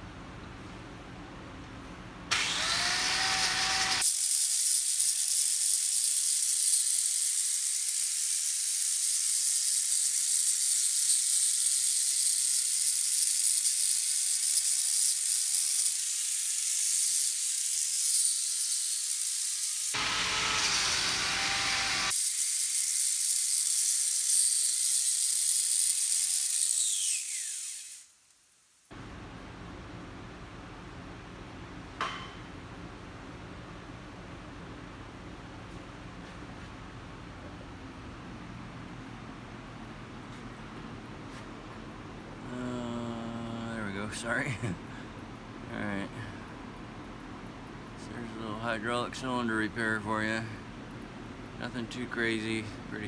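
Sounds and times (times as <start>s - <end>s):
electric grinder on steel: 2.3s - 28.2s.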